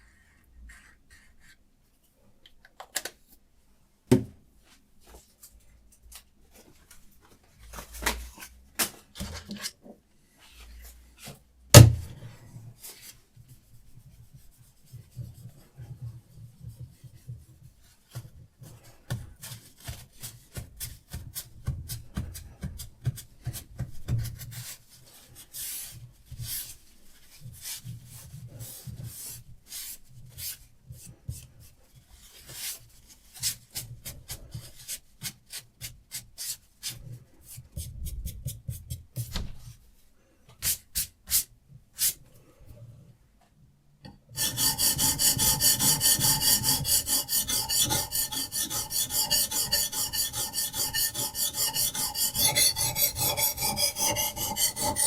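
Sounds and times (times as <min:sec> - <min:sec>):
sharpening stone scraping knife blade: 0:44.4 - 0:55.0.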